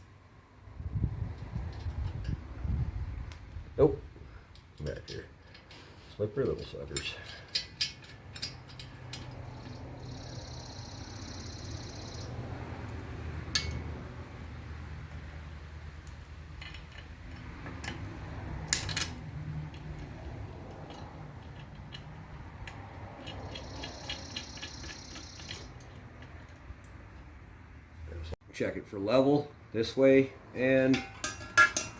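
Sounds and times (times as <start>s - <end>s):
metal hardware clinking: 4.5s - 10.3s, 12.9s - 13.9s, 16.0s - 27.2s, 30.7s - 31.9s.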